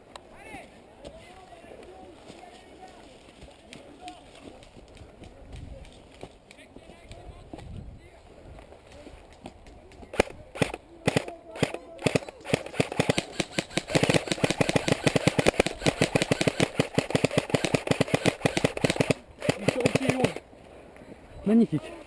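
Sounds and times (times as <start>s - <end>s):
airsoft guns firing: 10.1s - 20.4s.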